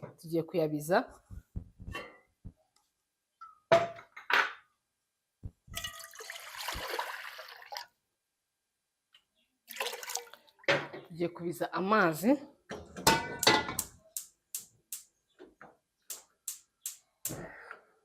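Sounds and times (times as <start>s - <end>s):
water poured into vessel: 5.7s - 7.9s, 9.7s - 10.4s
kitchenware clanking: 12.7s - 13.9s.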